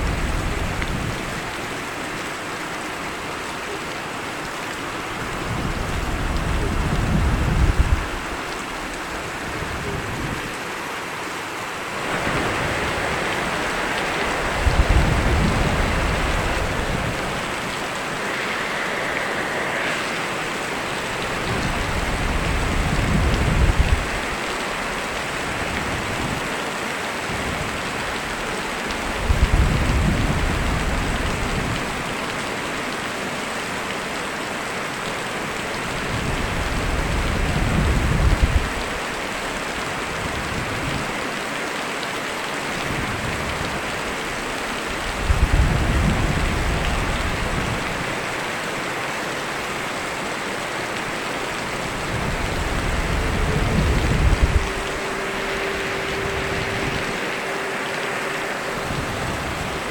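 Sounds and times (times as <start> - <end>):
steady rain hissing: 0.0 - 59.9
low rumbles of thunder: 5.2 - 10.5, 12.1 - 26.5, 42.8 - 48.2, 51.4 - 57.3.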